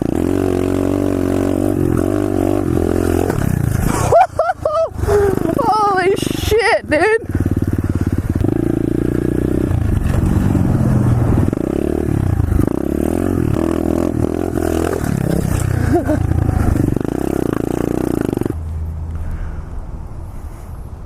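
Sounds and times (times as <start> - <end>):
pit bike engine revving: 0.0 - 18.6
bike churning in mud: 2.8 - 6.0, 14.2 - 18.6.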